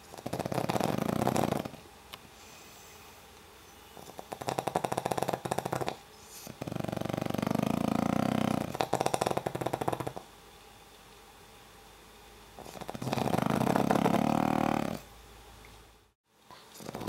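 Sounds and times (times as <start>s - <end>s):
dog snoring: 0.0s - 1.8s, 4.0s - 10.3s, 12.6s - 15.1s, 16.7s - 17.0s.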